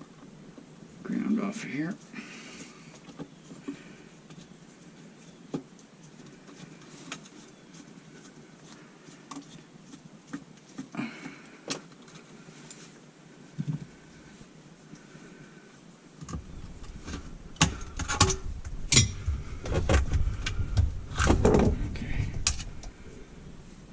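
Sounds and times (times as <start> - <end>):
tools and wires clicking: 16.2 - 19.3.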